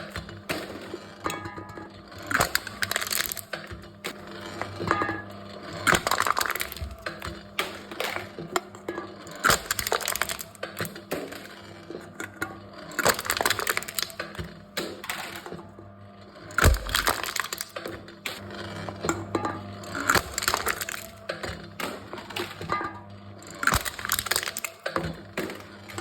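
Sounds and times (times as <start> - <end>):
cans crushed in machine: 0.0 - 26.0.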